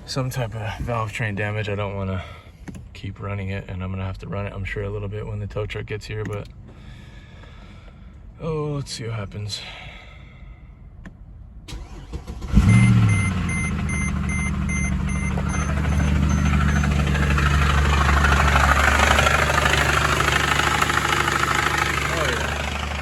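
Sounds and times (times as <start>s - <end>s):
car engine starting and idling roughly: 11.7s - 23.0s.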